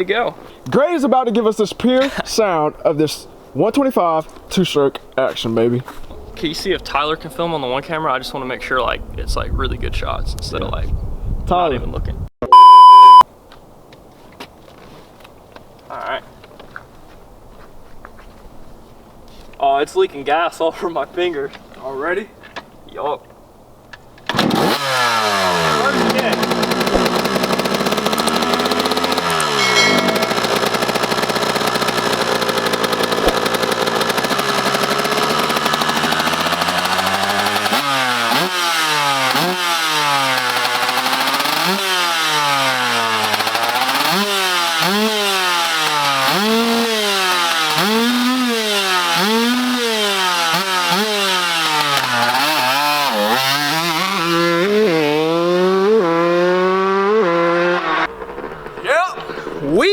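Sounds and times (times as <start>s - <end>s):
two-stroke motorcycle engine revving: 24.3s - 59.7s.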